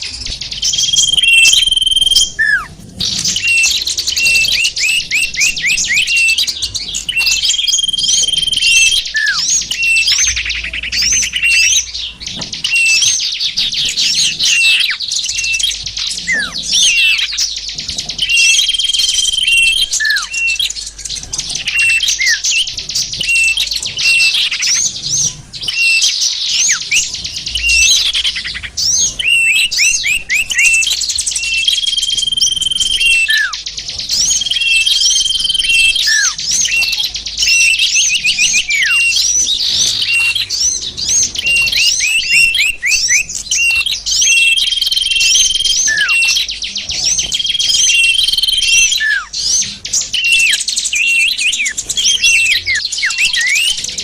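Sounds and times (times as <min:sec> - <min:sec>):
bird whistles: 0:00.0 - 0:54.0
songbirds chirping and trilling: 0:00.0 - 0:54.0.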